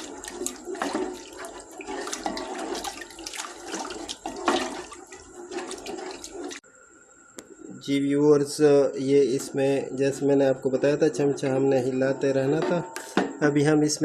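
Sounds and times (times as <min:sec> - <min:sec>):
liquid sloshing: 0:00.0 - 0:06.6
spoon scraping a pot: 0:00.0 - 0:06.6.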